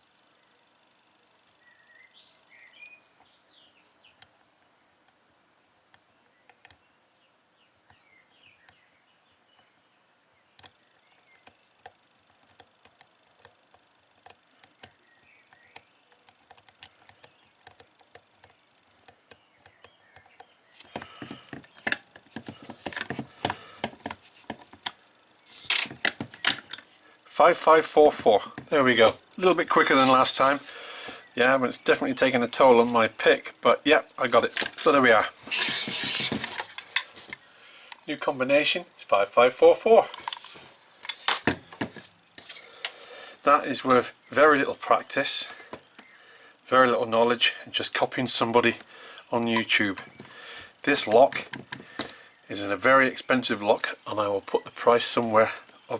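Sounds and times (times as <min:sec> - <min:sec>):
faint bird chirps: 0:00.0 - 0:05.0, 0:06.0 - 0:12.8, 0:13.5 - 0:22.9
lock dials rattling: 0:25.6 - 0:26.9.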